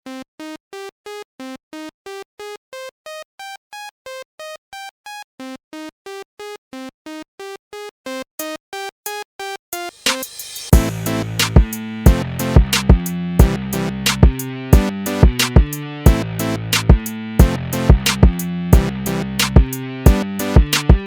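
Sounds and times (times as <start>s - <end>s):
hissing cymbal-like sound: 10.0s - 12.0s
bouncy synthesizer melody: 10.7s - 21.0s.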